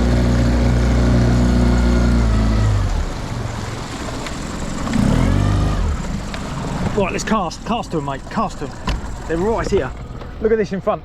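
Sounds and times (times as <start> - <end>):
outboard motor running: 0.0 - 11.0.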